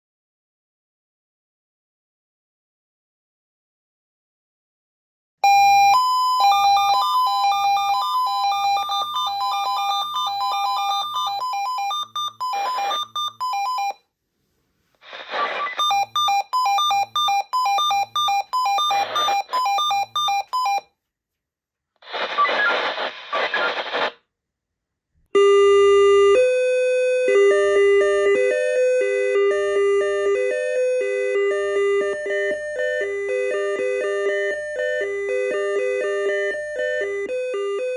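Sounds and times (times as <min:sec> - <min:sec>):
pager beeping alert melody: 0:05.4 - 0:14.0, 0:15.8 - 0:20.8.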